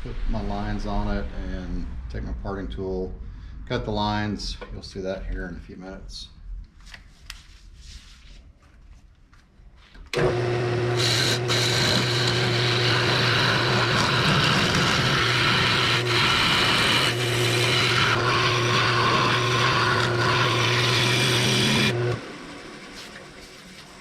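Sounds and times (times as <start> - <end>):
lathe motor hum: 10.1 - 24.0
lathe tool rasping wood: 10.2 - 22.2.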